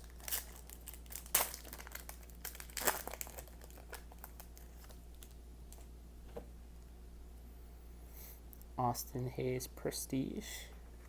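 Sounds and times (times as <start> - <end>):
wrapper tearing and crinkling: 0.0 - 5.8.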